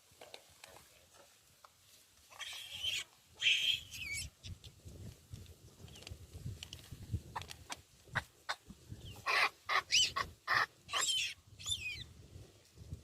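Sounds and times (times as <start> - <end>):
monkey screeching: 2.3 - 4.3, 9.2 - 12.0.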